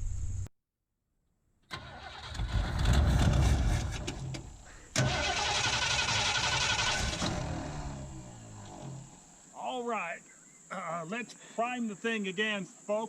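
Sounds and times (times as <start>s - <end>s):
starter motor cranking engine: 1.7s - 9.4s.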